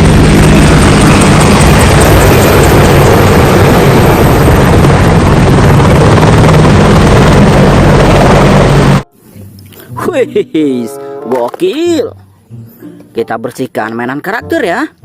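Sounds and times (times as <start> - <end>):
helicopter rotor and engine: 0.0 - 9.0.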